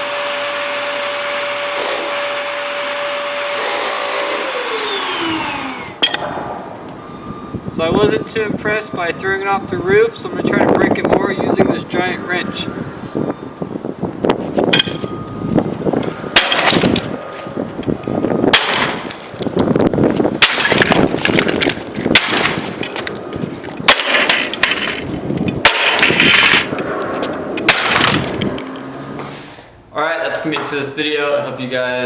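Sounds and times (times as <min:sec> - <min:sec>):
wrench smashing plastic: 0:16.4 - 0:17.1, 0:18.5 - 0:19.7, 0:20.4 - 0:26.8, 0:27.6 - 0:28.7.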